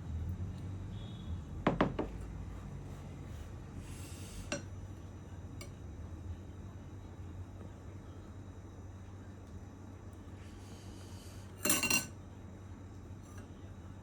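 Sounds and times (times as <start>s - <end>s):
low steady hum: 0.0s - 14.0s
dishes clinking: 11.6s - 12.2s.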